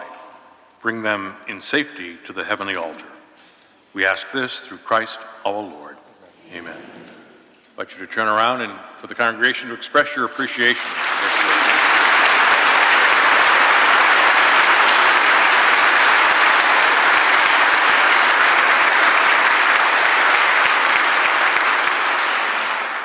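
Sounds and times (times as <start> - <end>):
congregation applauding: 10.5 - 23.0.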